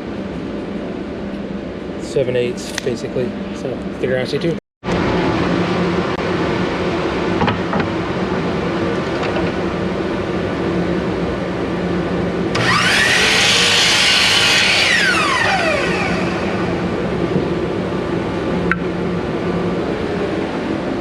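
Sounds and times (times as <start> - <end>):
steady machine hum: 0.0 - 21.0
power saw cutting wood: 12.6 - 16.9.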